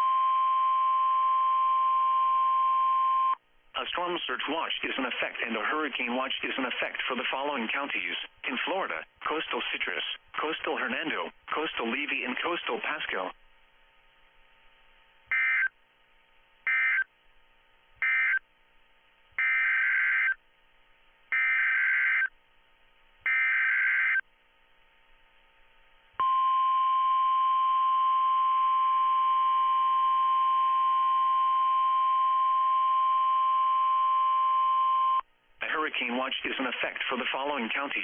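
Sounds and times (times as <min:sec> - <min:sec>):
steady warning alarm tone: 0:15.3 - 0:15.7, 0:16.7 - 0:17.1, 0:18.0 - 0:18.4, 0:19.4 - 0:20.4, 0:21.3 - 0:22.3, 0:23.2 - 0:24.2, 0:26.2 - 0:35.2.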